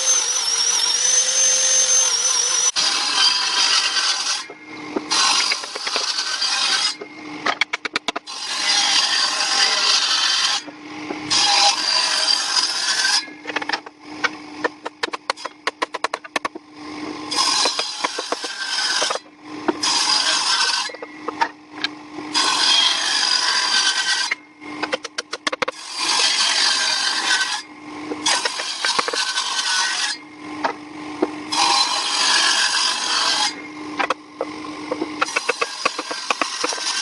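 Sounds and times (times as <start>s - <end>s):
tool working wood: 0.0s - 37.0s
steady hum: 13.3s - 19.8s, 33.5s - 37.0s.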